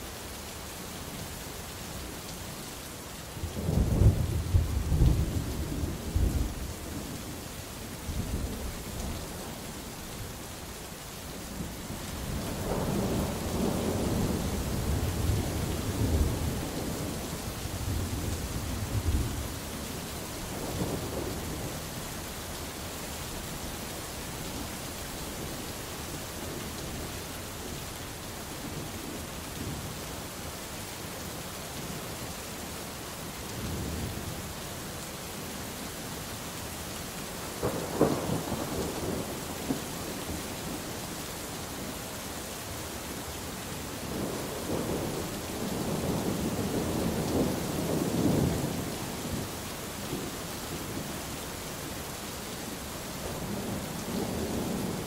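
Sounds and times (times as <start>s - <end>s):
steady rain: 0.0s - 55.0s
thunder rumbling: 37.6s - 39.8s.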